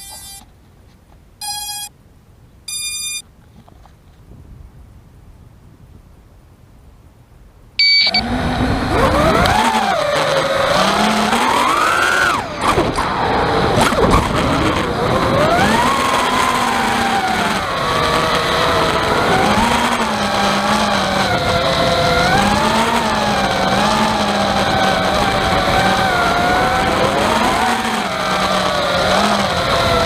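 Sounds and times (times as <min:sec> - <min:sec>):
quadcopter motors whining: 0:00.0 - 0:00.4, 0:01.4 - 0:01.9, 0:07.8 - 0:30.0.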